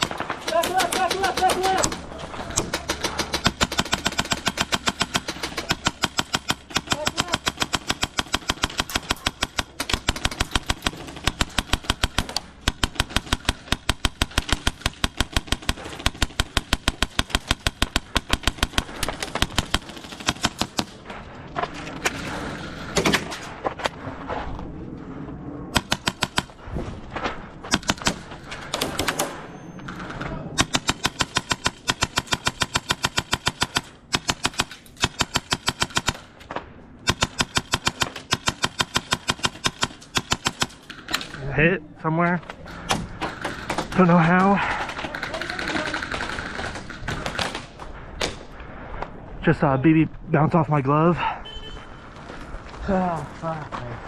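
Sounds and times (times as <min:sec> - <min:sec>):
airsoft guns firing: 0:00.0 - 0:21.0, 0:25.8 - 0:26.6, 0:27.7 - 0:36.4, 0:37.0 - 0:41.4, 0:42.7 - 0:48.4.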